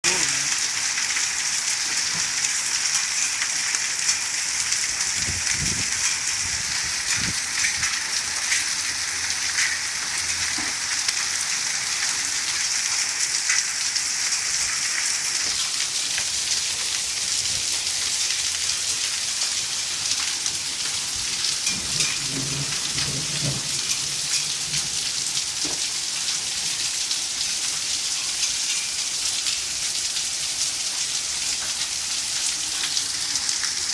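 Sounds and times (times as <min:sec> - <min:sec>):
rain and hail pelting: 0:00.0 - 0:33.9
low thunder rumbles: 0:21.7 - 0:25.0.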